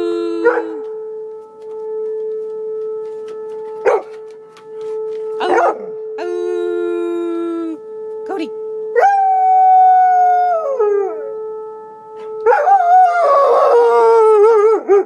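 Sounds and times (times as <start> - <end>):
dog howling: 0.0 - 1.0, 5.4 - 7.8, 12.3 - 15.0
tornado siren steady tone: 0.0 - 15.0.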